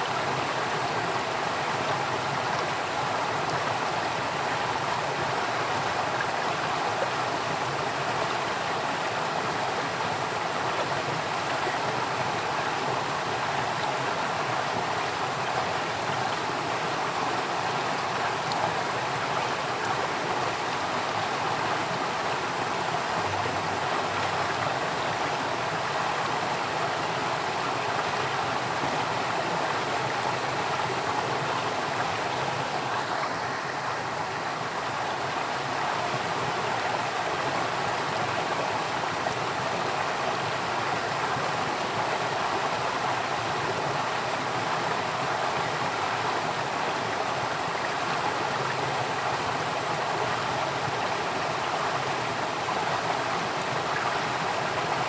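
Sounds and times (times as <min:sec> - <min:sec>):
flowing water: 0:00.0 - 0:55.0.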